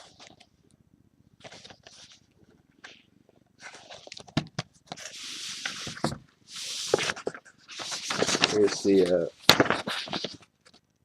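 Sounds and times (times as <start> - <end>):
card box rustling and crinkling: 3.6 - 10.5.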